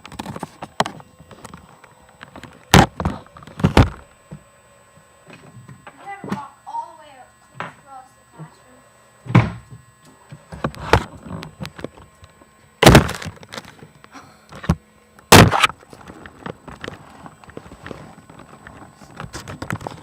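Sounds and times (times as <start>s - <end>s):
loud knocks and thumps: 12.8s - 13.3s, 15.3s - 15.7s
sharp bangs: 12.8s - 13.3s, 15.3s - 15.8s.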